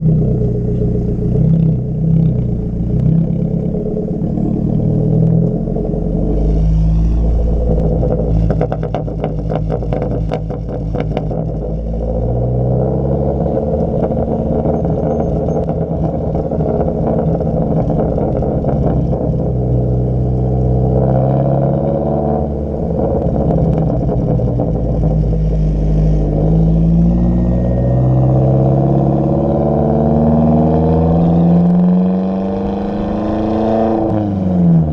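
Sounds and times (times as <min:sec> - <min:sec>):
exhaust pops and crackles: 0:00.0 - 0:27.1
car exhaust revving: 0:00.0 - 0:34.9.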